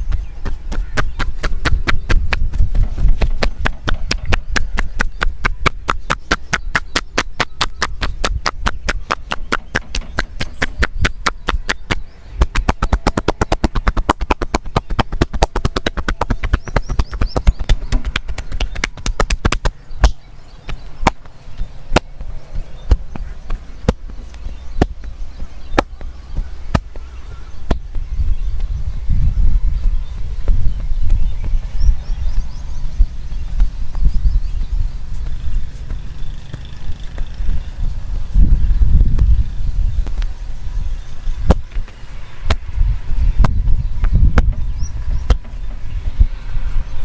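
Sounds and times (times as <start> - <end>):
hands chopping and slapping body: 0.1 - 28.0, 41.5 - 41.9.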